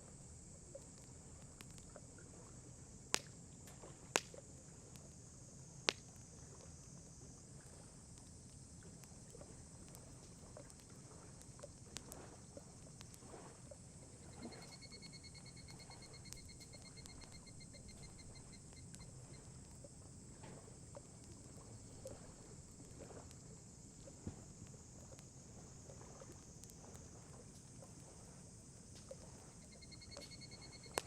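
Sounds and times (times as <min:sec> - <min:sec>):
campfire crackling: 0:00.1 - 0:05.2, 0:05.8 - 0:31.0
faint ticks: 0:00.1 - 0:31.0
fire sharp pops: 0:04.0 - 0:04.4.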